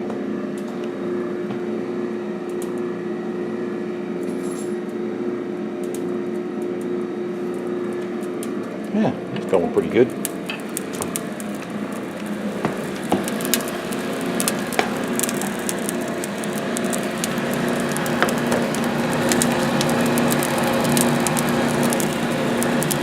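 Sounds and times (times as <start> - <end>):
fire crackling: 6.7 - 23.0.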